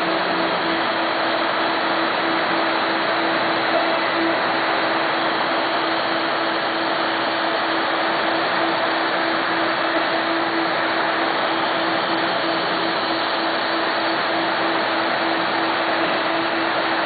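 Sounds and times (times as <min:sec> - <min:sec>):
machine mechanical hum: 0:00.0 - 0:17.0.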